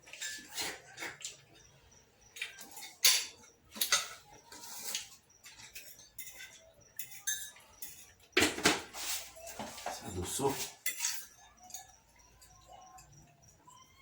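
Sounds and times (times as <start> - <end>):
spoon clinking against cup: 2.4 - 8.3, 10.6 - 14.0.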